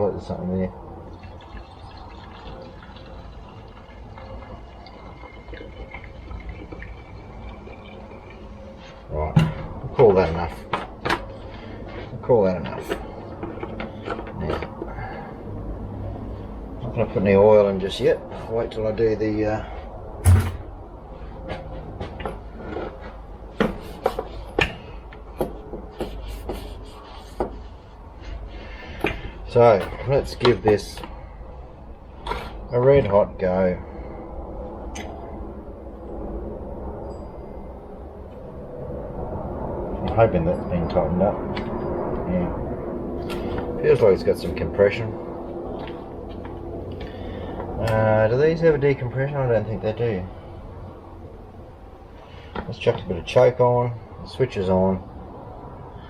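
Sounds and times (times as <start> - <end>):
fuel pouring into a tank: 0.9 - 12.1
heavy thump: 20.2 - 20.7.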